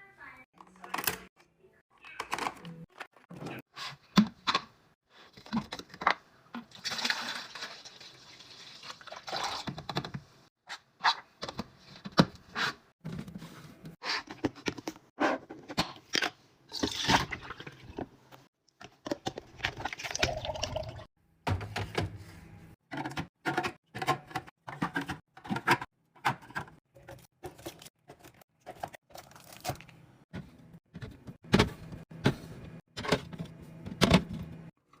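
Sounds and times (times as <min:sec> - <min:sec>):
containers and bottles clattering: 0:05.3 - 0:10.2, 0:15.6 - 0:22.1, 0:22.9 - 0:32.4.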